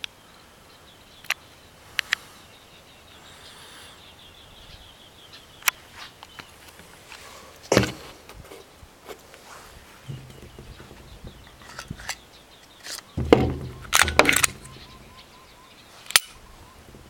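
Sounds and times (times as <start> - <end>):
thump: 7.7 - 8.2, 10.1 - 12.2, 13.2 - 15.3
faint high chirping: 10.1 - 17.0
sharp clicks: 12.8 - 15.2.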